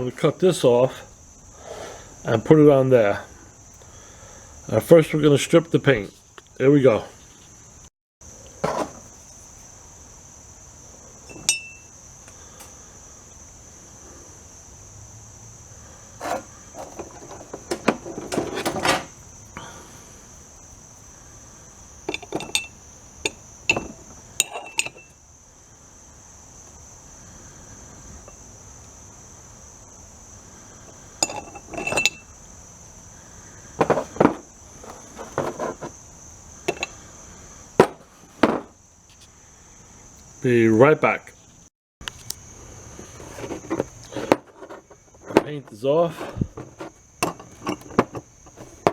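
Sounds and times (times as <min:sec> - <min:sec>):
metal clinks and scrapes: 0:11.3 - 0:11.9, 0:16.2 - 0:19.2, 0:22.1 - 0:25.2, 0:31.2 - 0:32.3, 0:33.8 - 0:35.9, 0:36.7 - 0:37.0, 0:43.1 - 0:48.9.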